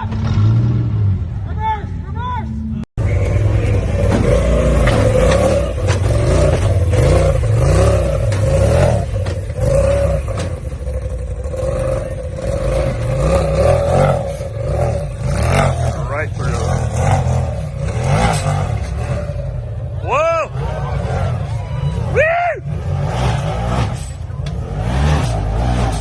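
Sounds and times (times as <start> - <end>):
off-road vehicle engine revving: 0.0 - 1.7, 3.0 - 26.0
knocks and clattering: 4.0 - 10.9.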